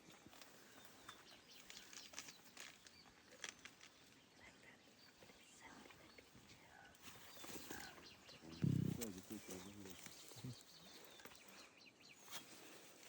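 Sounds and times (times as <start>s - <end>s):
soft crackles and rustles: 0.0s - 8.1s
faint bird chirps: 0.6s - 12.7s.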